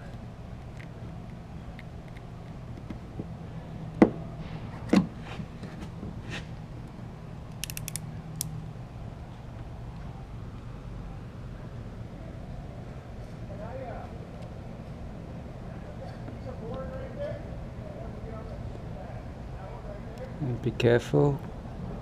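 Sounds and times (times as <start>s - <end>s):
steady low hum: 0.0s - 22.0s.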